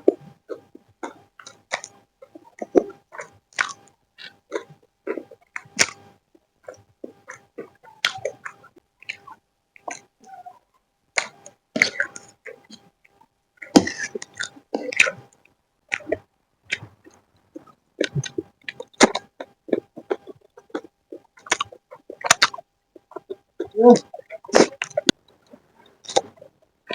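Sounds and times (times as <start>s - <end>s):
wet chewing and slurping: 15.9s - 26.5s.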